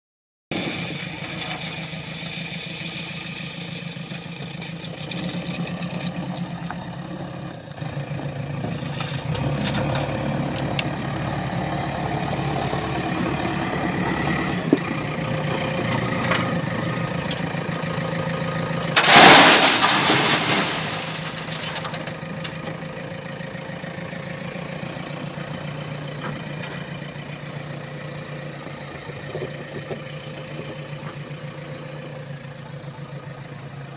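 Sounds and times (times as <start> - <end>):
diesel engine under load: 0.5 - 33.9
loud rushing crash: 19.0 - 22.0.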